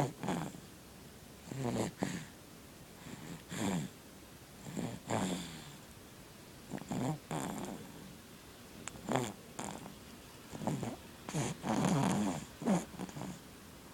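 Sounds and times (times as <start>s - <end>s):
baby snoring: 0.0s - 0.7s, 1.4s - 2.4s, 3.0s - 4.0s, 4.6s - 5.8s, 6.7s - 8.1s, 9.0s - 9.9s, 10.5s - 13.5s.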